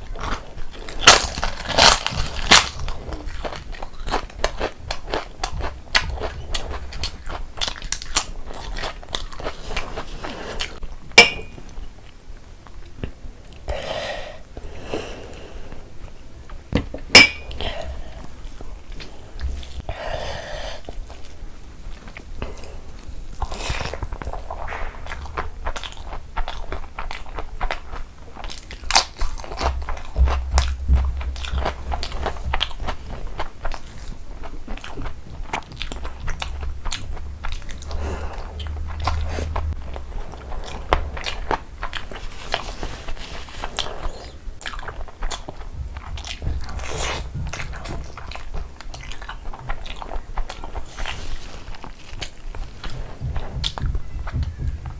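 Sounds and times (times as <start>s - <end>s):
crunchy bites and chewing: 0.0s - 10.8s.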